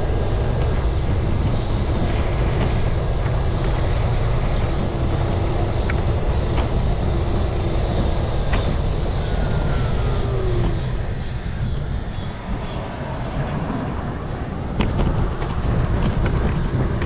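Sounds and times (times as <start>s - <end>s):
wind and road noise: 0.0s - 17.0s
scooter engine running: 1.5s - 15.0s.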